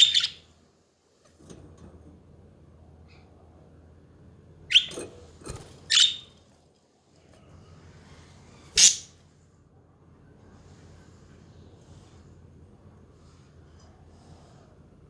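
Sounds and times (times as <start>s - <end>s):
budgerigars chirping: 0.0s - 0.4s, 4.7s - 5.0s, 5.9s - 6.3s, 8.8s - 9.1s
budgerigar hissy squawk: 8.8s - 9.1s.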